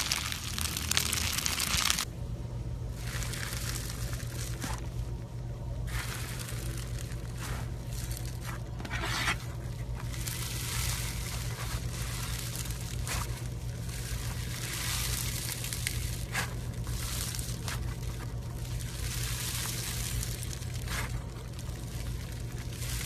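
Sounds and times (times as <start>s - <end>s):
slime squeezed by hand: 0.0s - 2.1s.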